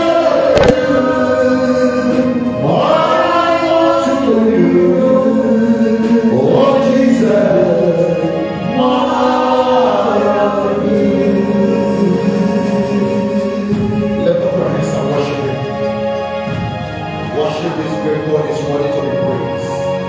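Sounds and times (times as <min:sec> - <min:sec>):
gospel choir singing: 0:00.0 - 0:20.0.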